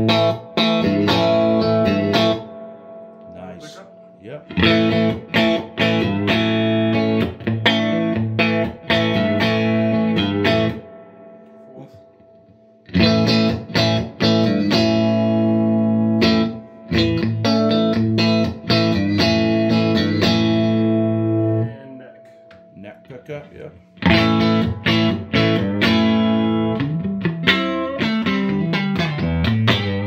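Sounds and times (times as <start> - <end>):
electric guitar strummed chords: 0.0 - 23.0, 24.0 - 30.0.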